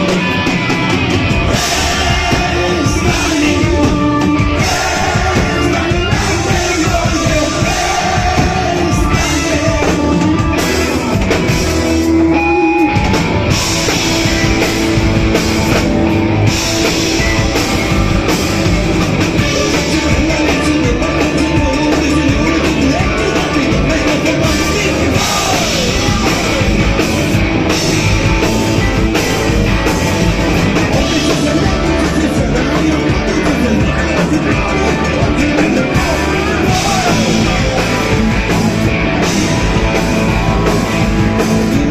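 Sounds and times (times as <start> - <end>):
drum kit: 0.0 - 41.9
live rock band playing: 0.0 - 41.9
person singing: 1.5 - 11.4, 19.2 - 30.0, 30.7 - 41.9.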